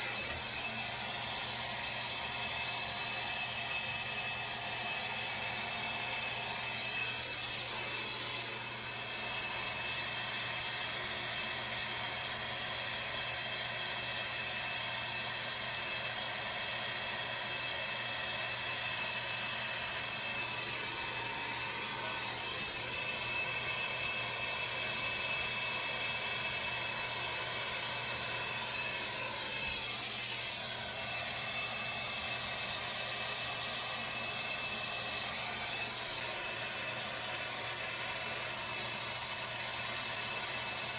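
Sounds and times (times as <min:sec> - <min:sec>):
soldering torch hissing: 0:00.0 - 0:40.9.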